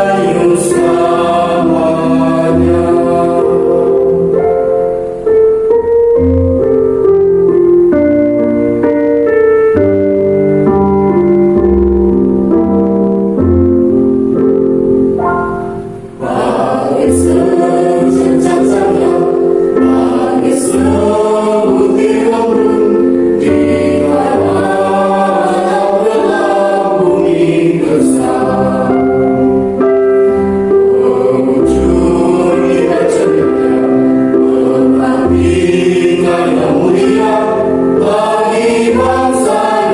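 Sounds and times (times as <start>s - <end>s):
children's choir singing: 0.0s - 5.2s, 15.4s - 39.9s
instrumental accompaniment with bass: 0.0s - 39.9s.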